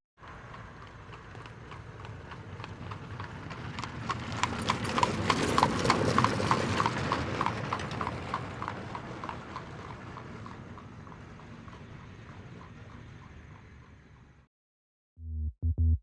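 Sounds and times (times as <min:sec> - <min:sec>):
hoofbeats clip-clop on hard surface: 0:00.2 - 0:14.4.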